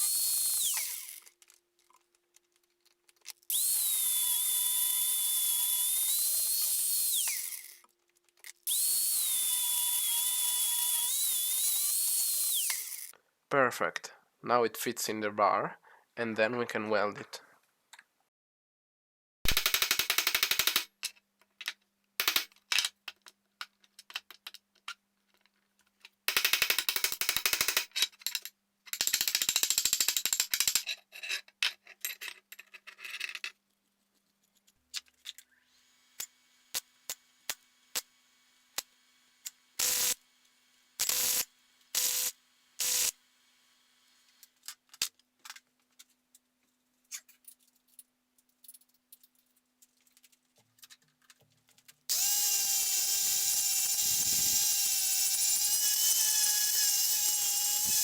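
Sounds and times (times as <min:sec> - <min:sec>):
arc welding crackling: 0:39.8 - 0:40.2, 0:41.0 - 0:43.1.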